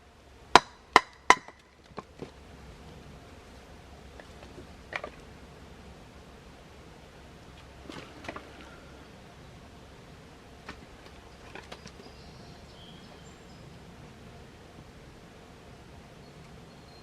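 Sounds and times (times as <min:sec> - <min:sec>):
faint high bird chirps: 0:11.2 - 0:13.8, 0:16.1 - 0:17.0.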